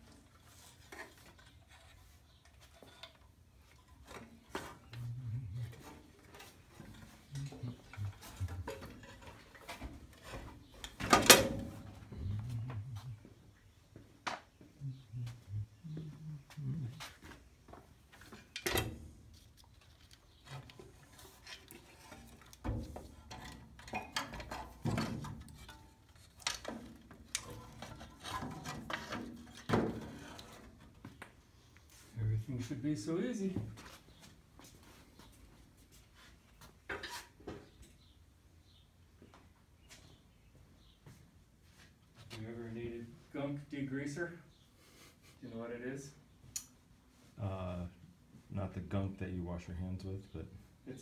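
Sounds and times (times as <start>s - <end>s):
metal parts and tools rattling: 18.4s - 30.7s.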